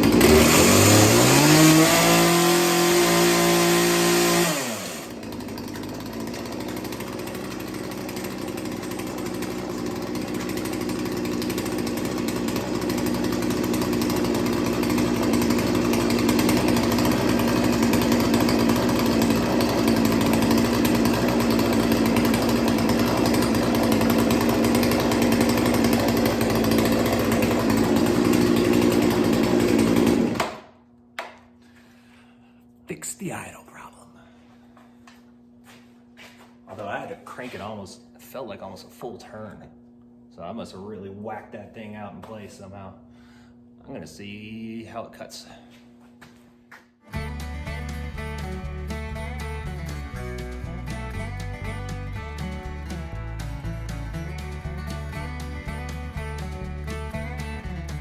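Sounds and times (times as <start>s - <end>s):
chainsaw engine running: 0.0s - 30.7s, 47.1s - 58.0s.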